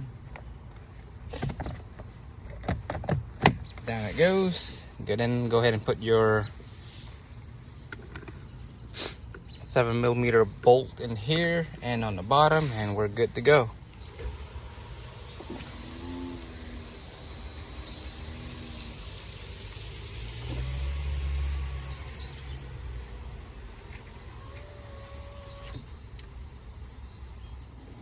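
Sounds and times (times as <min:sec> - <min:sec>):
low motor hum: 0:09.6 - 0:28.0
power window motor whine: 0:14.0 - 0:26.0, 0:27.7 - 0:28.0.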